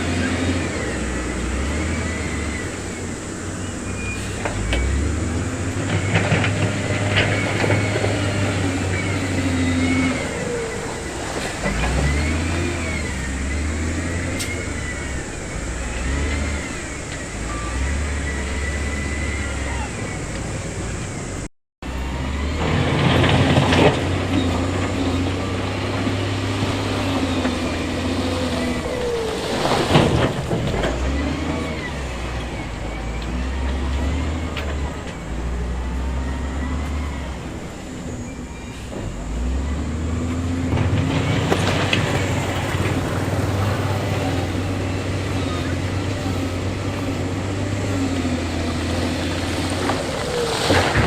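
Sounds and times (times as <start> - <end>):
machinery clattering: 0.0 - 21.5, 22.5 - 51.0
diesel machinery running: 0.0 - 51.0
knocks and clatter: 40.3 - 46.0.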